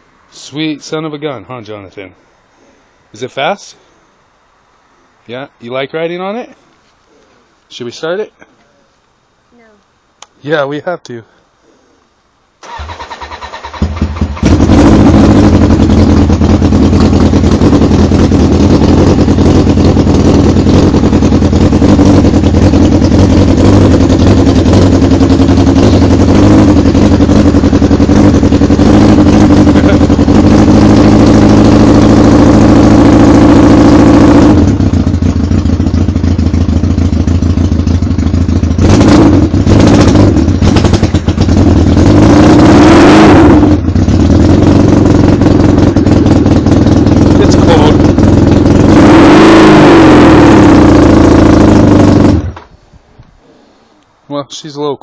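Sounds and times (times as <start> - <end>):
motorcycle engine revving: 12.6 - 52.7
motorcycle engine starting and running: 12.6 - 52.7.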